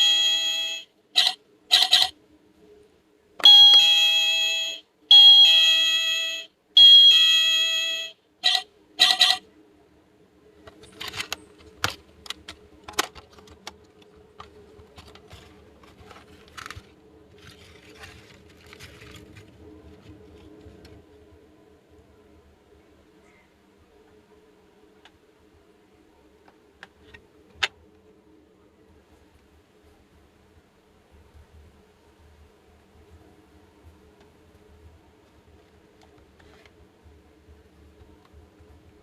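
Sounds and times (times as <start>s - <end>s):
toy electronic chime beeping: 0.0s - 2.1s, 3.4s - 9.4s
faint steady hum: 0.0s - 39.0s.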